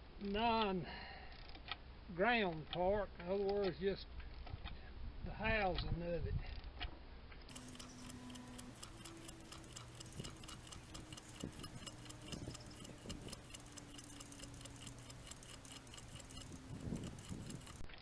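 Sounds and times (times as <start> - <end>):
fast even ticking: 7.5 - 17.9.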